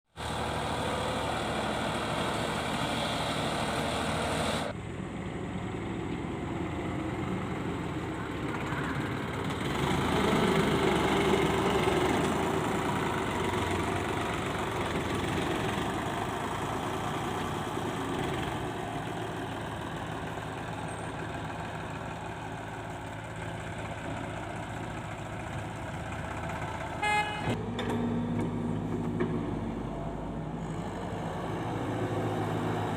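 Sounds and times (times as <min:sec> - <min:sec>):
diesel machinery engines running: 0:00.2 - 0:32.9.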